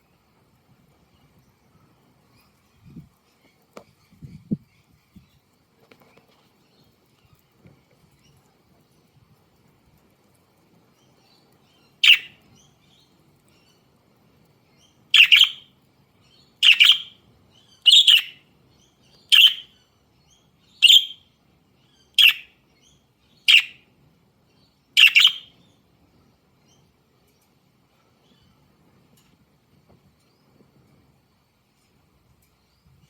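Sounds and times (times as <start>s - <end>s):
budgerigar chirping: 12.0s - 12.4s, 15.2s - 15.7s, 16.6s - 17.2s, 17.8s - 18.4s, 19.3s - 19.7s, 20.8s - 21.2s, 22.2s - 22.5s, 23.5s - 23.8s, 25.0s - 25.5s.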